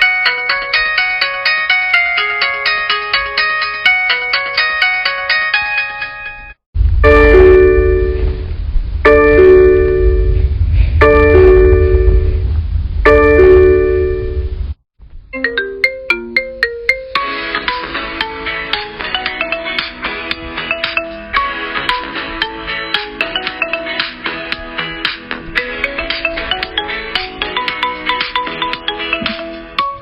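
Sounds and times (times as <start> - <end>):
phone ringtone melody: 0.0 - 8.4, 9.1 - 10.4, 11.0 - 12.4, 13.1 - 14.5, 15.4 - 24.9, 25.6 - 30.0
heavy low rumble: 6.8 - 15.4
bell-like electronic tune: 7.0 - 8.5, 9.1 - 14.6
plucked-sounding melody: 15.3 - 24.0, 25.5 - 30.0.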